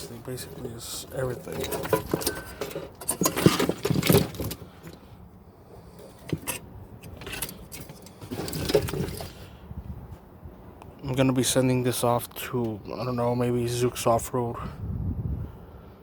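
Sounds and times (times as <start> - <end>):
wiring harness rustling and clinking: 0.6 - 5.0, 6.1 - 9.4.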